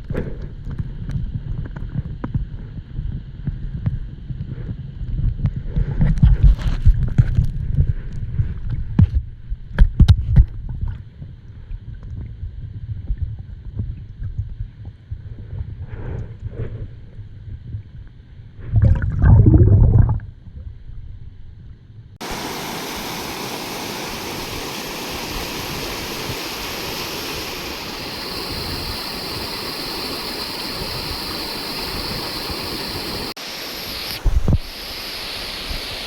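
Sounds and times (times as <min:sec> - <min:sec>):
rushing water: 0:22.2 - 0:36.0.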